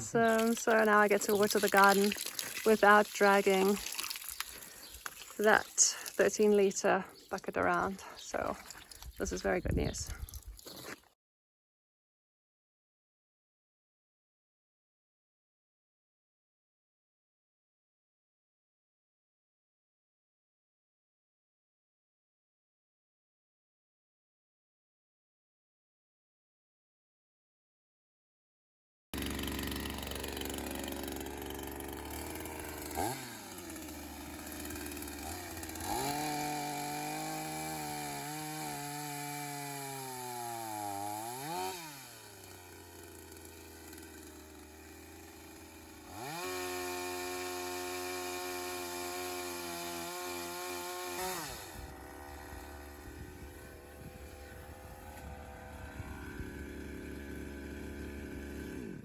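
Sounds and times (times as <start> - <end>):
two-stroke chainsaw revving: 0.0 - 9.9, 29.2 - 59.0.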